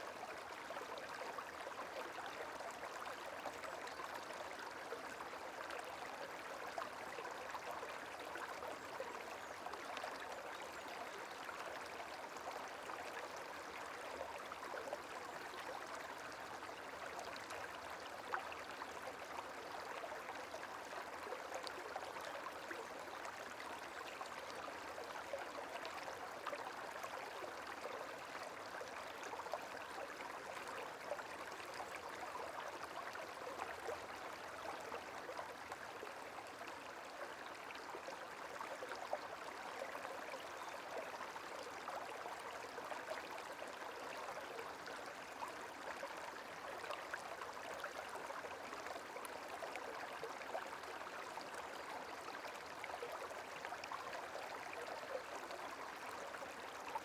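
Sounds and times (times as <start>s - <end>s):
small stream trickling: 0.0s - 57.0s.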